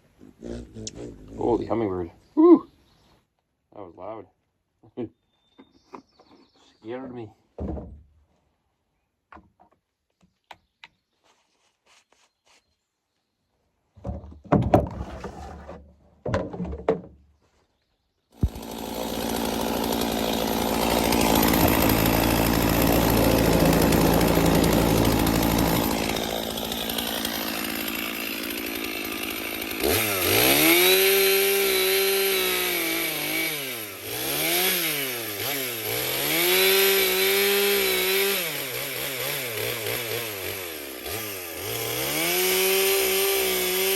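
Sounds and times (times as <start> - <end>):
chainsaw running and revving: 18.4 - 43.9.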